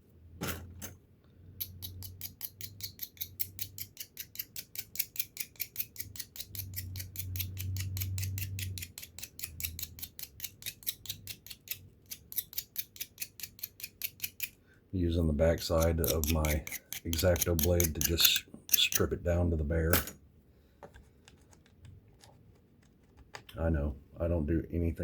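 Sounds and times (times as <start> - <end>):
blade scraping along wire: 1.9 - 14.5, 15.6 - 19.2.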